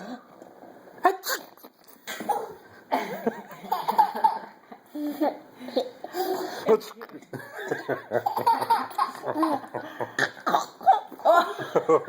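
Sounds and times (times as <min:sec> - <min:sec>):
laughter: 0:03.0 - 0:04.6, 0:07.3 - 0:10.2, 0:11.2 - 0:12.0.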